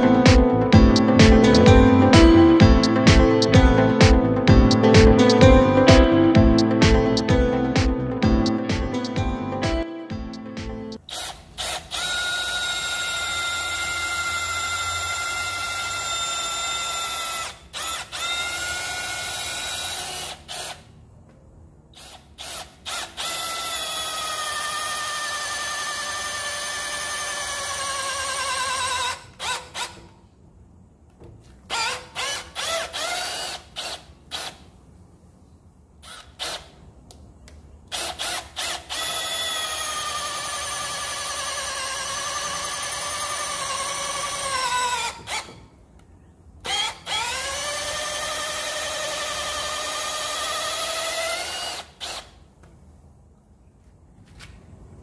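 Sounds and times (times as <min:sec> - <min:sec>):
rotary hammer motor whine: 0:22.0 - 0:30.1, 0:37.9 - 0:45.6, 0:46.6 - 0:52.3.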